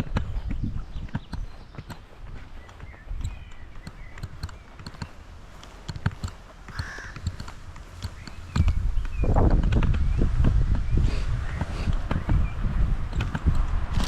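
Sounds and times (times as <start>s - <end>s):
footsteps walking: 0.0s - 10.9s
birds calling: 0.0s - 14.0s
wind buffeting microphone: 0.0s - 14.0s.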